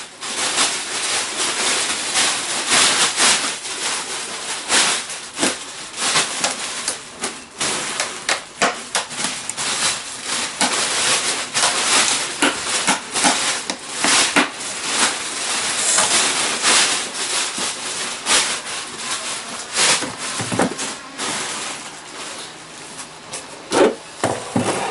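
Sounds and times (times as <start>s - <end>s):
steady hiss: 9.4s - 20.0s.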